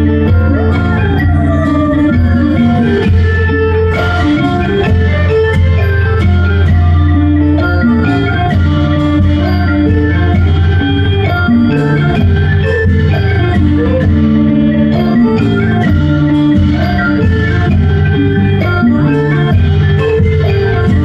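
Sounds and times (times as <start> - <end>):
music with steady beat: 0.0 - 21.0.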